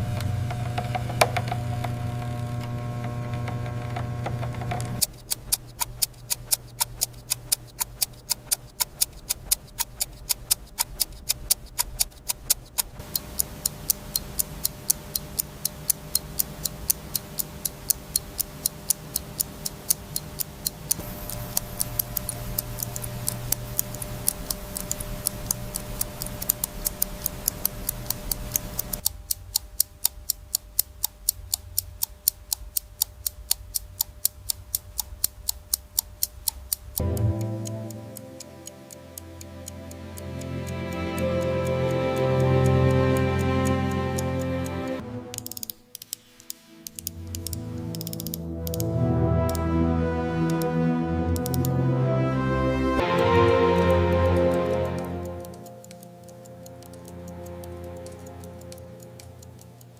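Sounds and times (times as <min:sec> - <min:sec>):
steady low hum: 0:00.0 - 0:45.3
rapid mechanical ticking: 0:00.0 - 0:49.6, 0:51.3 - 0:51.7, 0:53.8 - 0:59.9.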